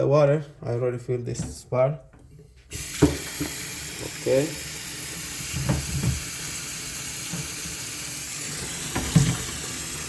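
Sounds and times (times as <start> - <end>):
water splashing in a sink: 2.7 - 10.0.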